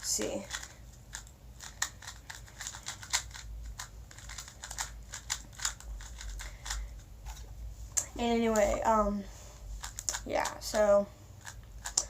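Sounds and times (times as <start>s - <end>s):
puzzle cube plastic clicks: 0.3s - 7.4s.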